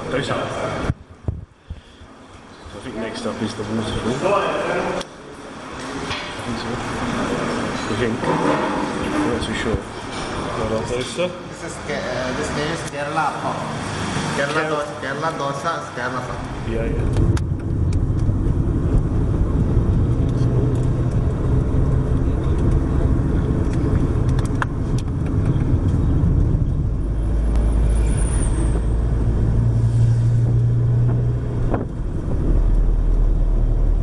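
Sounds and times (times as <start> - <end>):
car engine and road rumble: 13.6 - 34.0
brief high squeal: 27.9 - 29.0.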